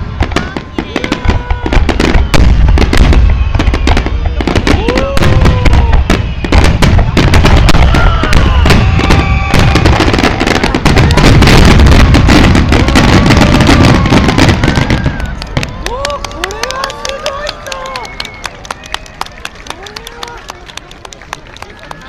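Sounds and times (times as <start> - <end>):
fireworks bursts and crackles: 0.0 - 22.0.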